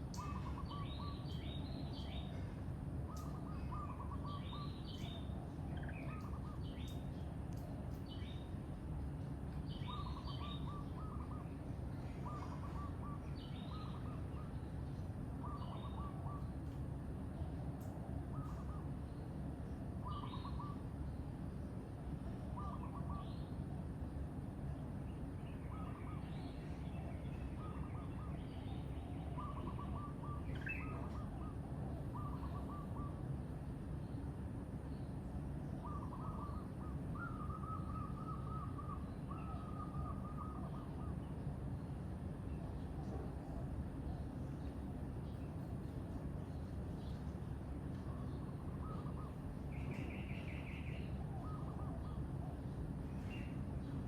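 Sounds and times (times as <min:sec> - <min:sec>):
low background rumble: 0:00.0 - 0:54.0
bird repeating low call: 0:35.8 - 0:41.4, 0:48.1 - 0:52.7.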